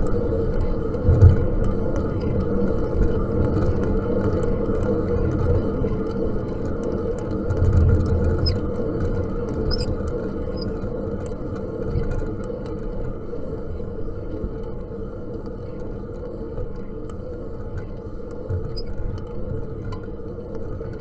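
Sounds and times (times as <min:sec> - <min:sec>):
fan whirring drone: 0:00.0 - 0:21.0
faint squeaks and ticks: 0:07.6 - 0:12.1, 0:17.1 - 0:21.0.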